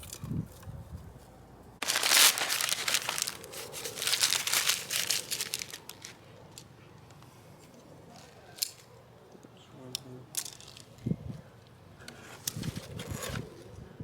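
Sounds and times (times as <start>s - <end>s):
dry material crinkling: 1.8s - 6.6s.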